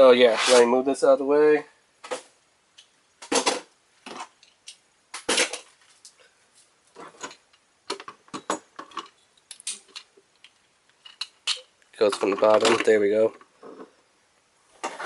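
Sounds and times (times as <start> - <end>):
toy parts clicking and clattering: 7.2 - 13.0.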